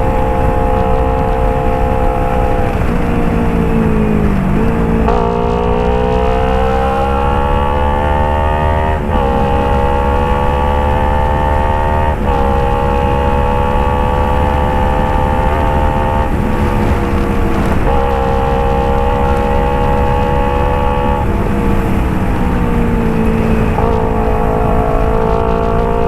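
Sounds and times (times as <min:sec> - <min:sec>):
motorcycle engine pulling: 0:00.0 - 0:26.0
microphone crackling: 0:08.6 - 0:26.0.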